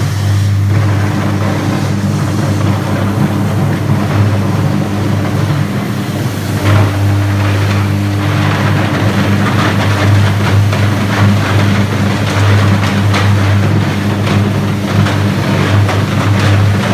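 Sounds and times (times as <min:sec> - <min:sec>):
electric arc crackling: 0:00.0 - 0:16.9
electrical hum of arc furnace: 0:00.0 - 0:16.9.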